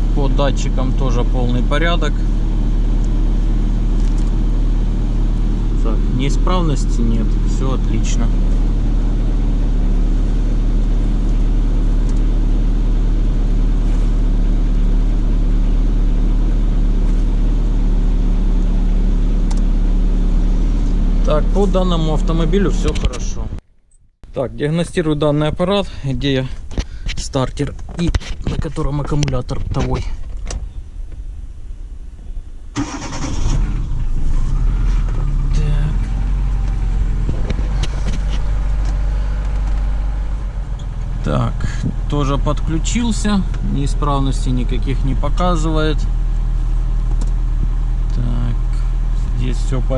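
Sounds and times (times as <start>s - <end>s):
car engine idling: 0.0s - 23.6s, 28.9s - 49.9s
car starter cranking: 32.7s - 35.4s.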